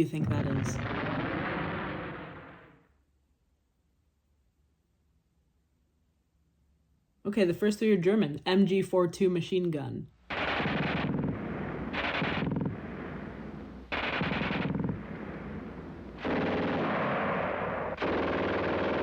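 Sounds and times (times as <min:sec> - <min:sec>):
machine gun firing bursts: 0:10.3 - 0:13.1, 0:13.9 - 0:15.3, 0:16.2 - 0:19.0.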